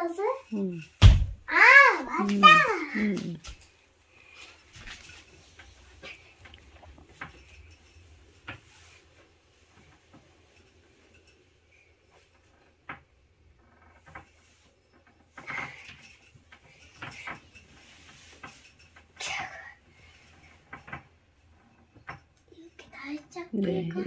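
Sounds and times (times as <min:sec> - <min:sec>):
light knocks and rustles: 0:04.3 - 0:23.3.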